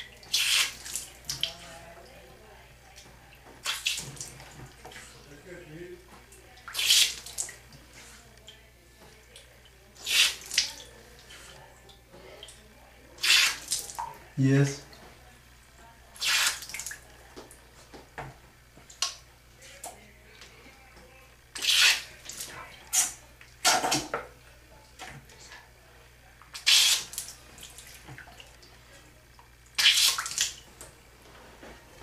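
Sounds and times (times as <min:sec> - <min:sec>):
syringe water squirts splashing: 0:00.0 - 0:01.7, 0:03.6 - 0:05.1, 0:06.6 - 0:07.6, 0:10.0 - 0:10.9, 0:13.2 - 0:14.1, 0:16.2 - 0:17.0, 0:21.5 - 0:23.2, 0:26.4 - 0:28.7, 0:29.7 - 0:30.6.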